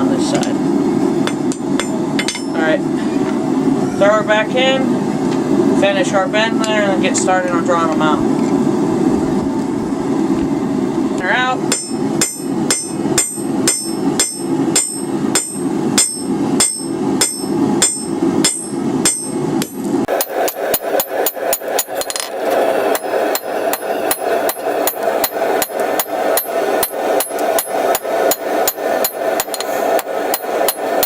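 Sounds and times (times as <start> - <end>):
hammer striking steel on anvil: 1.2 - 2.6, 11.7 - 31.0.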